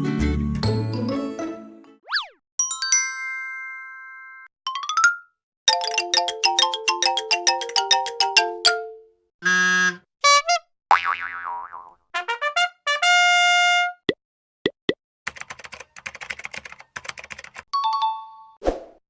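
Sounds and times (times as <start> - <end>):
fast plinking notes: 5.7 - 9.0.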